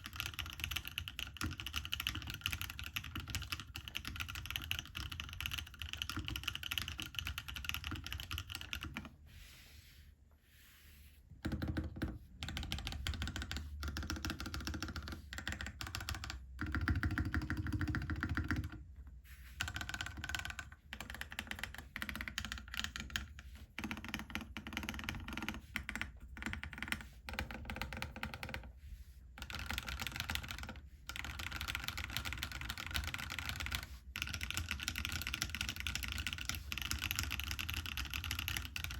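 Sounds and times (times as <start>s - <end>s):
mechanical keyboard typing: 0.0s - 9.1s, 11.4s - 18.8s, 19.6s - 28.7s, 29.4s - 38.9s.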